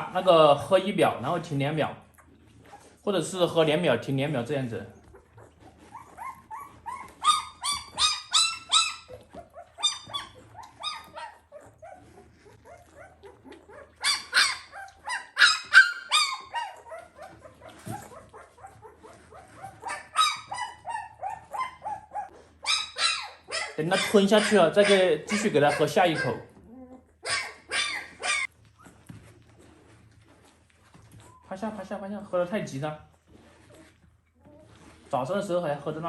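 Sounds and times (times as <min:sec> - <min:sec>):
puppy whimpering: 0:02.1 - 0:03.0, 0:04.8 - 0:31.8, 0:33.1 - 0:35.2
puppy yelping and squealing: 0:02.1 - 0:03.0, 0:04.9 - 0:29.6, 0:30.4 - 0:31.5.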